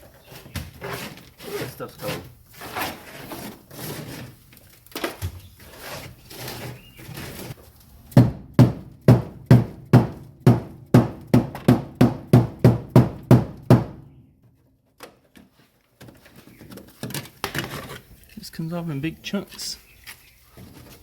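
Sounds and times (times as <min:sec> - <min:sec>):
rubber mallet thuds: 0:08.1 - 0:14.1
light scraping and knocking: 0:15.2 - 0:18.5, 0:19.5 - 0:21.0.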